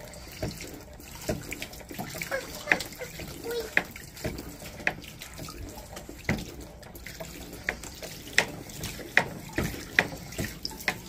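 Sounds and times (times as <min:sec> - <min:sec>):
water splashing and running: 0:00.0 - 0:11.0
plastic hand pump knocks: 0:00.4 - 0:01.5, 0:02.4 - 0:05.0, 0:06.2 - 0:06.6, 0:07.6 - 0:11.0.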